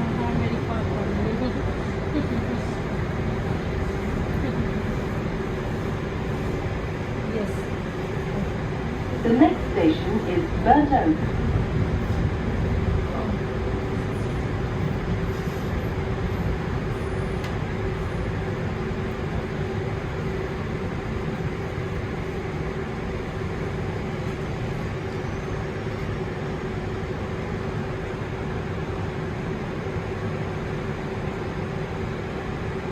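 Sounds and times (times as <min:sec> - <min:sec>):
train motor hum: 0:00.0 - 0:25.2
train rumble inside carriage: 0:00.0 - 0:32.9.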